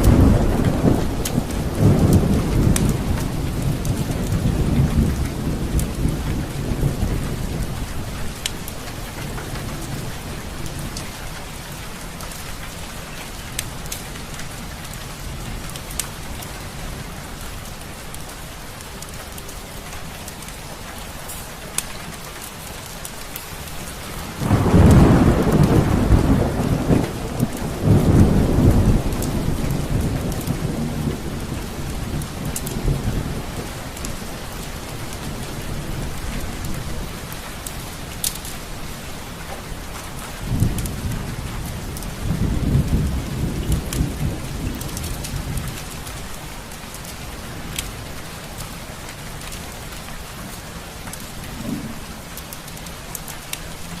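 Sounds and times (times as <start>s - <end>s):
rolling thunder: 0.0s - 12.4s, 24.0s - 38.6s, 39.4s - 50.3s, 51.2s - 52.8s
steady rain: 0.0s - 54.0s.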